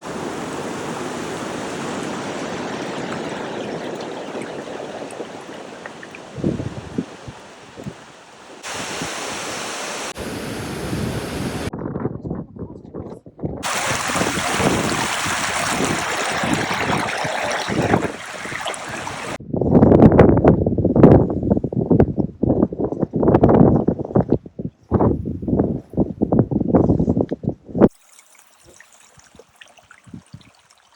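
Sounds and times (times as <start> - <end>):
rushing water: 0.0 - 11.7, 13.6 - 19.4, 27.9 - 30.9.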